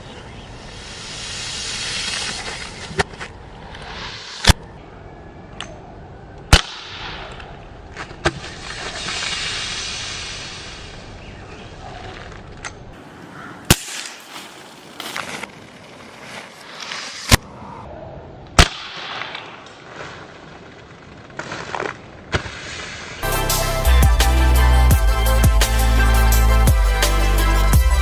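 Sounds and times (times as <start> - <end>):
rushing hiss: 0.5 - 2.8, 8.7 - 11.2
air pistol shots cracking: 13.7 - 14.6, 18.6 - 19.6.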